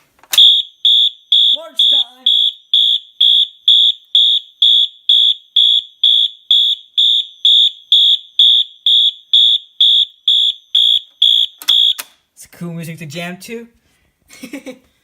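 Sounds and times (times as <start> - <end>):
fire alarm horn blasts: 0.4 - 12.0.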